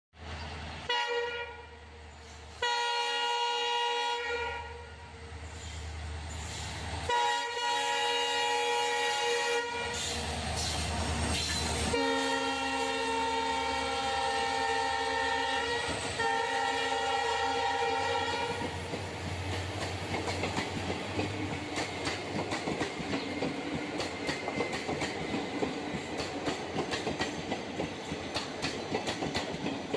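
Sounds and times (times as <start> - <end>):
train horn blasts: 0.9 - 2.0, 2.6 - 5.3, 7.1 - 10.2, 11.8 - 18.7
train wheels clattering over rails: 18.4 - 29.9.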